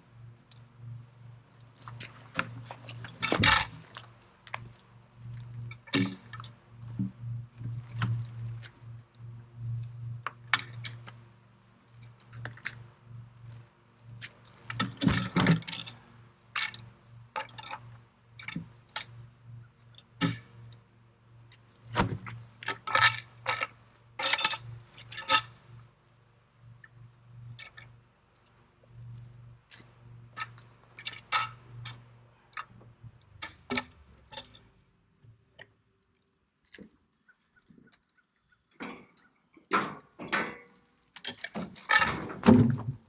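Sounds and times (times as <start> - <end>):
low hum: 0.0 - 34.8.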